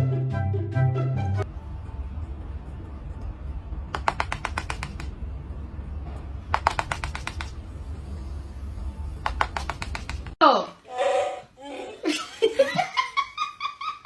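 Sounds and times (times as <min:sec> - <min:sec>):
rapid sharp tapping: 0:03.9 - 0:05.2, 0:06.5 - 0:07.6, 0:09.2 - 0:10.4.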